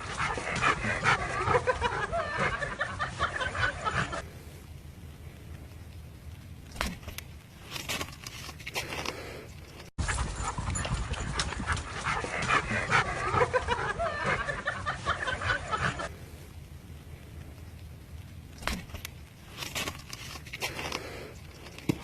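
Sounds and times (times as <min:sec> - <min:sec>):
dog sounds: 0:00.0 - 0:04.3.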